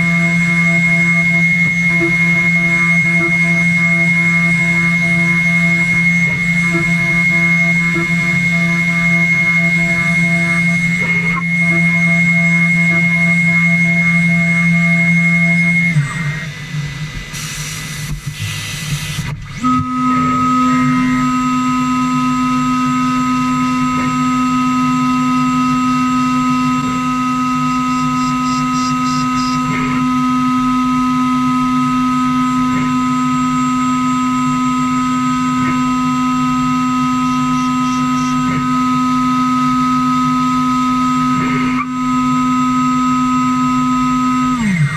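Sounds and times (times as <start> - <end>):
router spindle whine: 0.0 - 44.9
low hum: 18.1 - 41.4
rough cutting noise: 26.6 - 30.0.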